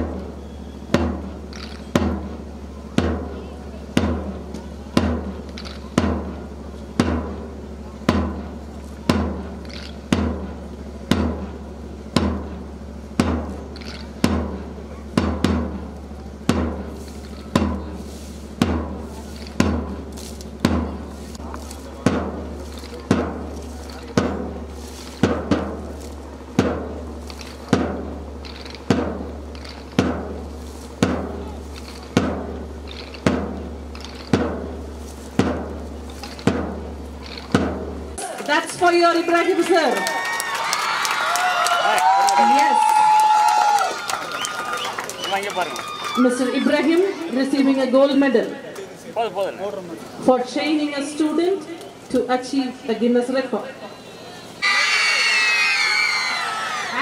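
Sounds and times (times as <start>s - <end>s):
steady low hum: 0.0s - 38.4s
drum beating march time: 0.0s - 51.4s.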